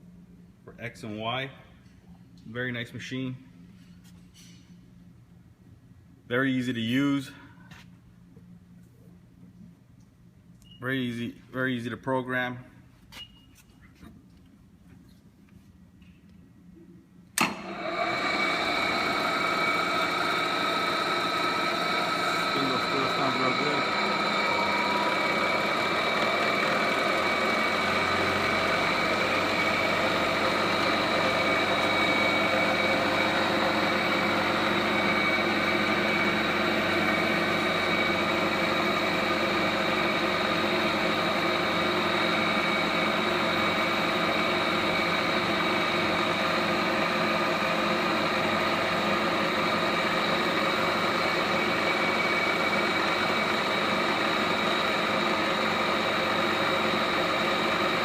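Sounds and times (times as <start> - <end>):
milling machine humming and whining: 17.4 - 58.0.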